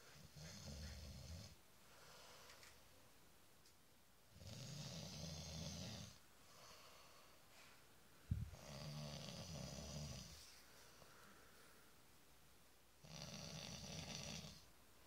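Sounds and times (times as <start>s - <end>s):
man snoring: 4.3s - 6.2s, 8.5s - 10.4s, 13.0s - 14.6s.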